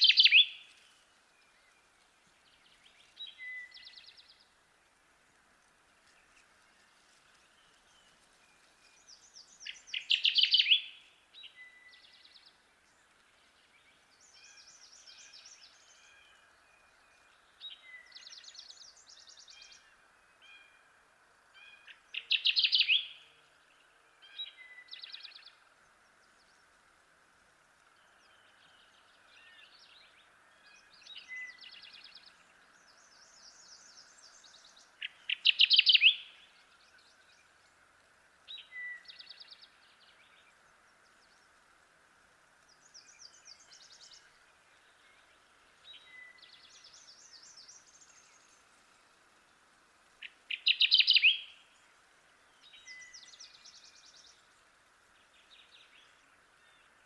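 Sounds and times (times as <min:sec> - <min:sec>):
faint bird song: 0:00.0 - 0:57.0
faint hiss: 0:00.0 - 0:57.0
warbler singing rapid song: 0:08.9 - 0:16.1, 0:21.9 - 0:26.7, 0:28.0 - 0:41.7, 0:42.4 - 0:57.0.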